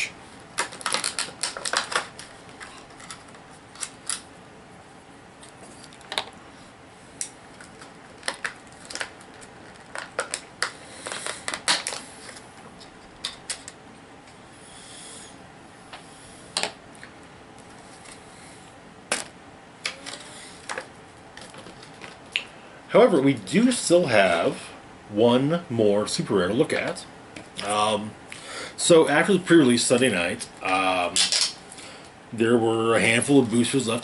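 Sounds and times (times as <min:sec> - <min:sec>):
soft packaging rustle: 0:20.0 - 0:22.3.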